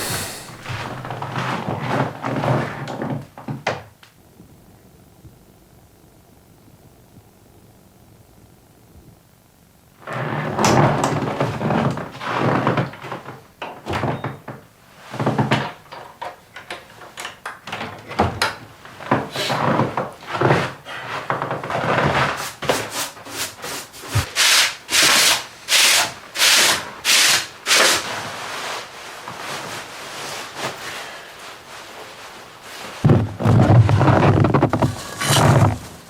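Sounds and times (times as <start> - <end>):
quick regular scraping strokes: 0.0 - 1.3
rubbing and scraping: 0.0 - 1.5, 32.6 - 36.0.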